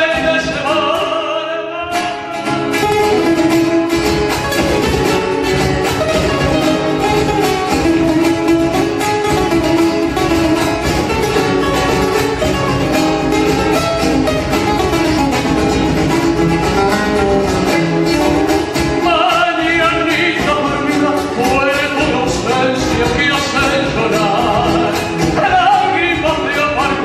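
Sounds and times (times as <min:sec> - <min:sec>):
person singing: 0:00.0 - 0:02.9, 0:17.0 - 0:27.0
strummed guitar: 0:00.0 - 0:27.0.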